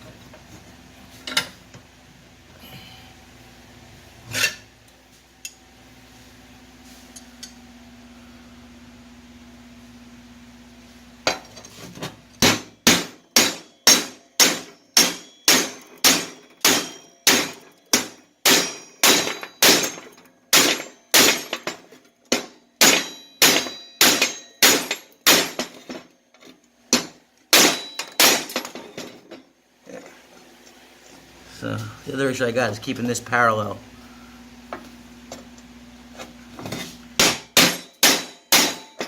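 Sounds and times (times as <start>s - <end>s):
hammer striking steel: 12.4s - 26.0s, 26.9s - 29.0s, 37.2s - 39.0s.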